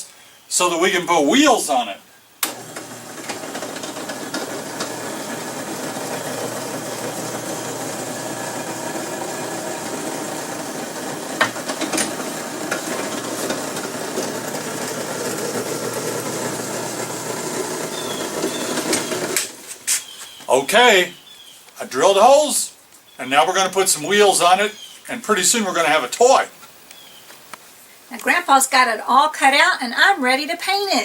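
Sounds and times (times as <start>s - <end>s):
electric drill boring wood: 2.4s - 19.7s.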